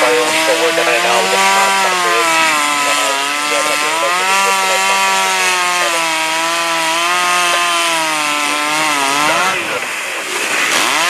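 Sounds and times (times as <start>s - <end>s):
engine running at high speed: 0.0s - 11.0s.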